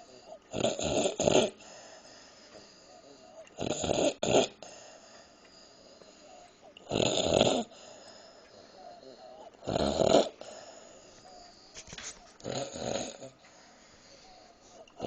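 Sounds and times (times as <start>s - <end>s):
woman snoring loudly: 0.5s - 1.6s, 3.6s - 4.6s, 6.9s - 7.7s, 9.1s - 10.4s, 12.4s - 13.4s.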